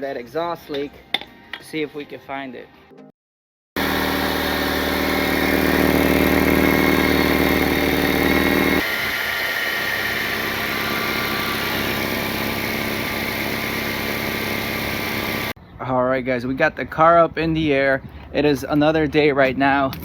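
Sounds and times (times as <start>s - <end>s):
car engine idling: 3.8s - 15.5s.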